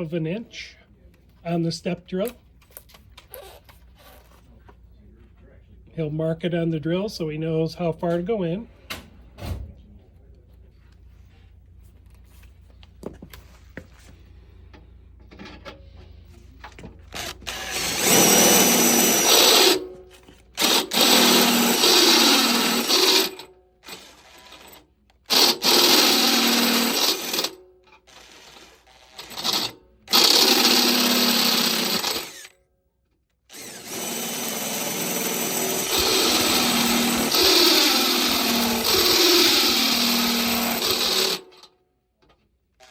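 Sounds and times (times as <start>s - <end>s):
power drill boring: 17.1s - 19.9s, 20.6s - 32.6s, 33.5s - 41.7s.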